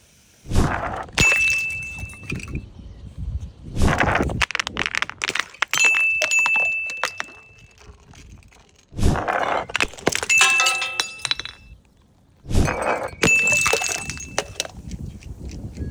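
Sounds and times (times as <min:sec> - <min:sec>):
glass bottles smashing: 0:01.0 - 0:02.6, 0:03.9 - 0:11.8, 0:12.5 - 0:14.7.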